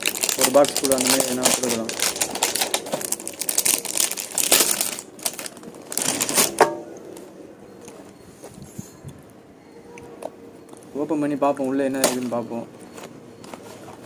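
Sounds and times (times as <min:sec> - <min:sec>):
plastic packaging clicking and rustling: 0:00.0 - 0:08.0.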